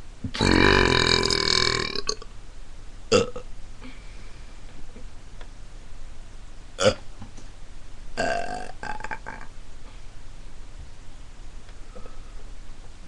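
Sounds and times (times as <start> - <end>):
person burping: 0.3 - 2.2, 3.1 - 3.4, 6.8 - 7.0, 8.2 - 9.5.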